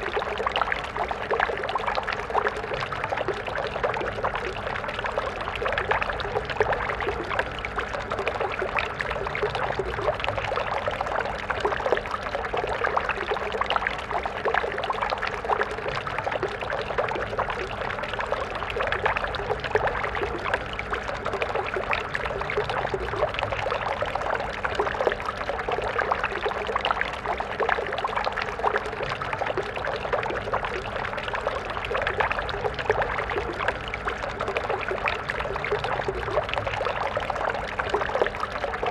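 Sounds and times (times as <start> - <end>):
stream flowing over stones: 0.0 - 4.5.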